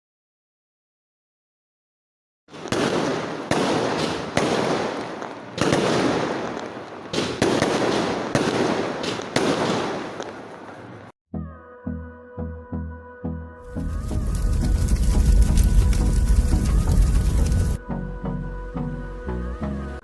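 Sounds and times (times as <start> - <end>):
fireworks banging: 2.5 - 11.1, 13.7 - 17.8.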